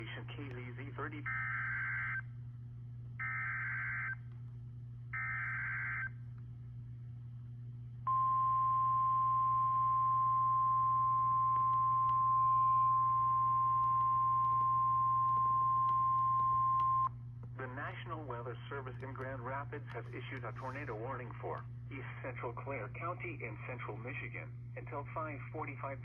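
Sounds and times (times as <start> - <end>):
low steady hum: 0.0 - 26.0
single-pitched alarm tone: 5.2 - 6.1, 8.1 - 17.1.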